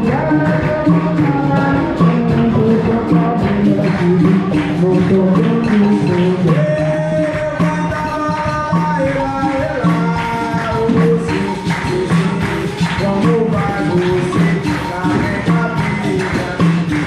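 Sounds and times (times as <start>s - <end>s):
group singing: 0.0s - 17.0s
hand percussion with tambourine jingles: 0.0s - 17.0s.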